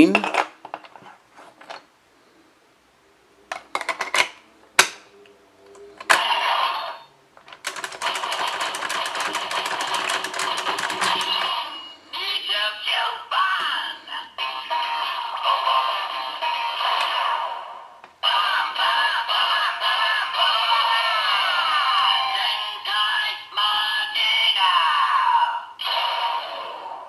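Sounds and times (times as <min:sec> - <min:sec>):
plastic toy clicking: 0:03.5 - 0:05.1, 0:05.7 - 0:06.3, 0:07.4 - 0:11.5
music from toy speaker: 0:06.0 - 0:25.2.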